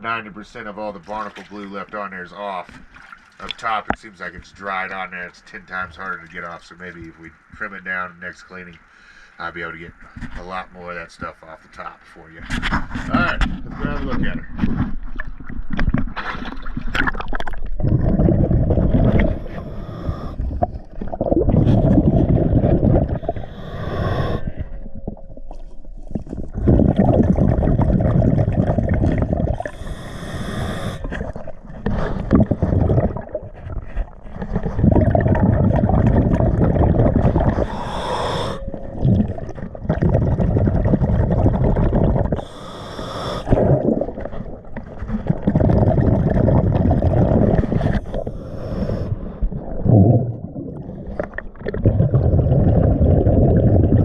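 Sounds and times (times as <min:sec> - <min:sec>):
bubbles gurgling on exhale: 0:14.9 - 0:54.0
regulator hiss on inhale: 0:19.2 - 0:20.5, 0:23.2 - 0:24.7, 0:29.6 - 0:31.1, 0:37.6 - 0:38.7, 0:42.4 - 0:43.6, 0:47.8 - 0:49.3.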